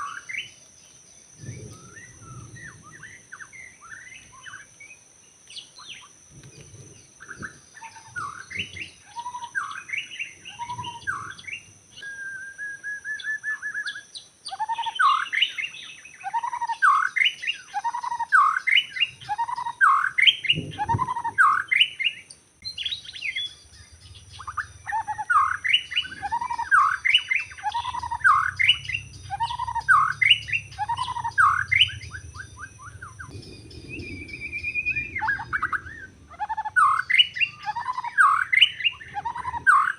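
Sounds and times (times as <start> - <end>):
bird singing whistled notes: 0.0 - 39.9
bird trill: 0.0 - 39.9
high-pitched whine: 22.6 - 39.9.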